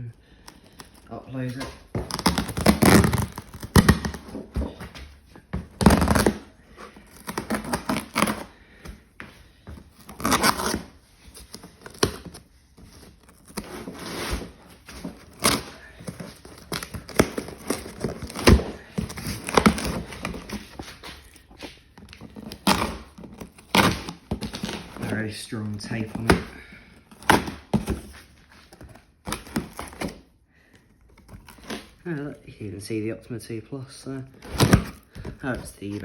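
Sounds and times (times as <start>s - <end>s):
packing tape tearing: 0.4s - 4.8s, 5.7s - 8.6s, 10.0s - 25.2s, 27.1s - 30.3s, 31.1s - 32.0s, 34.4s - 36.0s.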